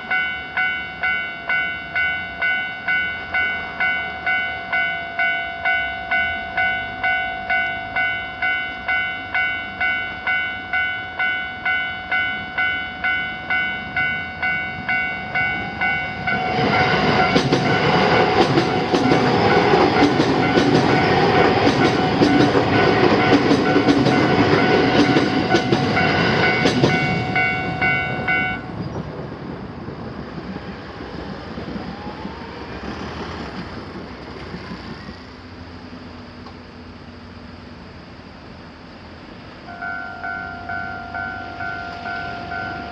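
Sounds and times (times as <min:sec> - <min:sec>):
railroad crossing alarm ringing: 0:00.0 - 0:29.0, 0:39.6 - 0:42.9
train wheels clattering: 0:13.5 - 0:35.3.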